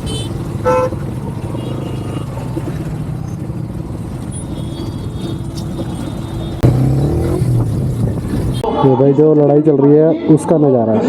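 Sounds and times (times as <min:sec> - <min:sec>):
motorcycle engine running: 0:00.0 - 0:08.8
traffic noise: 0:00.0 - 0:11.0.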